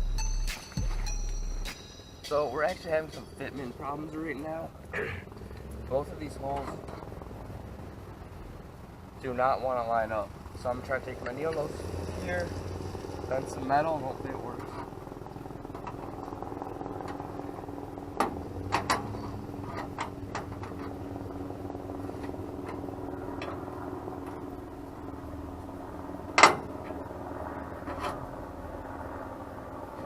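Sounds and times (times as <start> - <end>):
steady hum: 0.0 - 30.0
metal clicks and clanks: 18.2 - 21.0.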